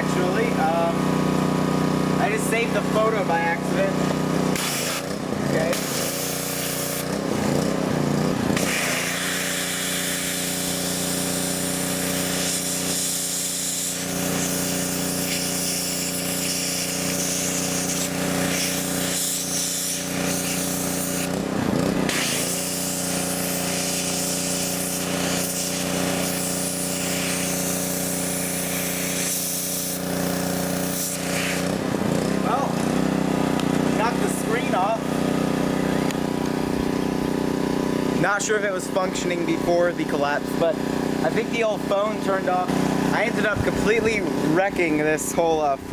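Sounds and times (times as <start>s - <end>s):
pressure washer humming: 0.0s - 45.9s
water jet hissing: 4.0s - 7.2s, 8.5s - 21.5s, 22.1s - 31.8s.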